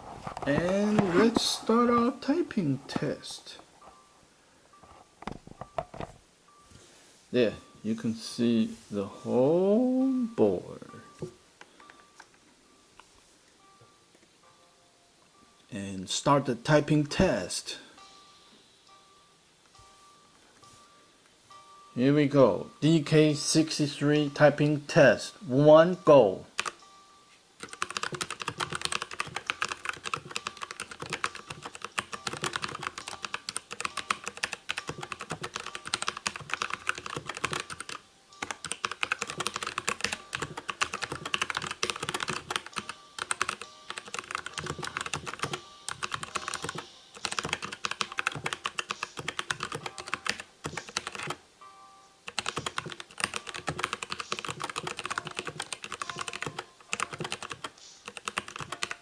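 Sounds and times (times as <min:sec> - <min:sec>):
mechanical keyboard typing: 0:26.6 - 0:26.8, 0:27.6 - 0:51.4, 0:52.3 - 0:59.0.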